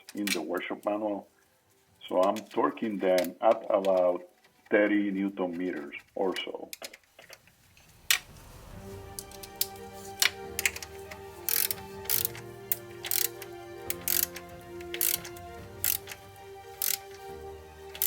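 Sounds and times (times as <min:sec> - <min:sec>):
background music: 0:00.0 - 0:05.9, 0:07.3 - 0:18.0
ratchet wrench rasping: 0:11.5 - 0:17.3.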